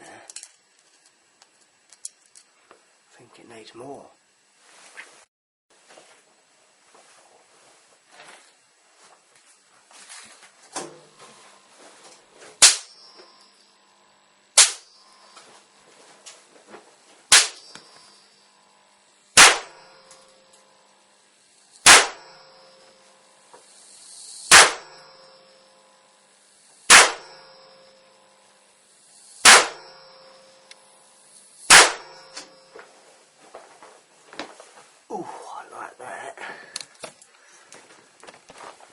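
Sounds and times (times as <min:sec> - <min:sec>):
electrical spark cracks: 0:12.6 - 0:13.0, 0:14.5 - 0:15.0, 0:17.3 - 0:18.0, 0:19.3 - 0:20.7, 0:21.4 - 0:25.4, 0:26.4 - 0:28.0, 0:28.9 - 0:32.7.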